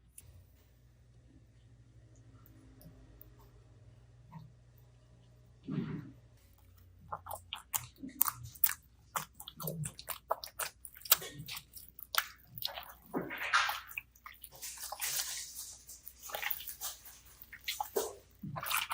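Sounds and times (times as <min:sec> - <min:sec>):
slime squished by hand: 0:07.1 - 0:18.9.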